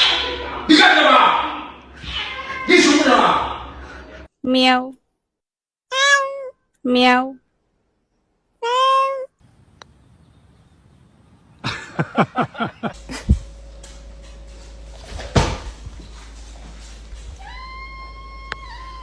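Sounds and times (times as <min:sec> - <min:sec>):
cat meowing: 0:02.0 - 0:02.8, 0:05.9 - 0:06.5, 0:08.6 - 0:09.3, 0:17.4 - 0:19.0.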